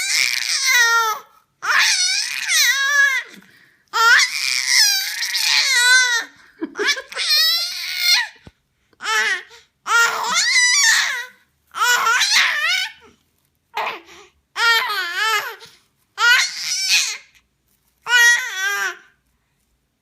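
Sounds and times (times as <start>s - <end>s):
baby high-pitched calls: 0.0s - 3.4s, 9.0s - 13.0s, 16.2s - 17.3s, 18.0s - 19.1s.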